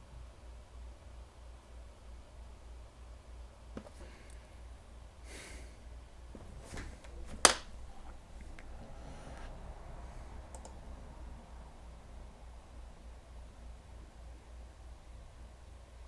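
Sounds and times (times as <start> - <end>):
faint steady hum: 0.0 - 16.0
keyboard and mouse clicks: 10.5 - 10.8.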